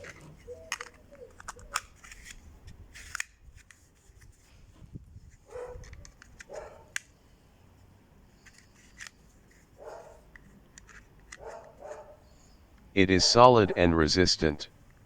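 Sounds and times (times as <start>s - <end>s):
sheath clicks: 0.0s - 4.3s, 5.5s - 7.2s, 8.4s - 12.0s.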